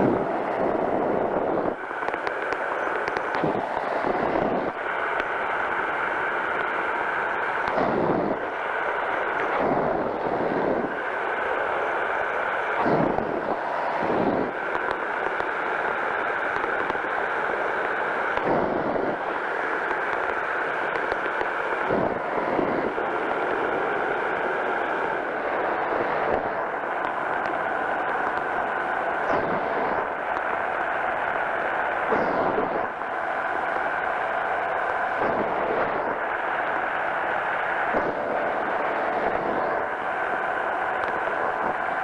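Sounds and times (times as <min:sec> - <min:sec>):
wind rumble on microphone: 0:00.0 - 0:01.8
engine and propeller drone: 0:00.0 - 0:42.0.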